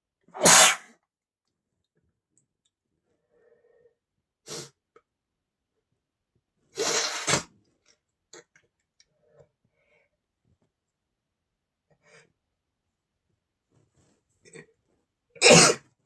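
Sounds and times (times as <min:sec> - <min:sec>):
man sneezing: 0:00.4 - 0:00.8.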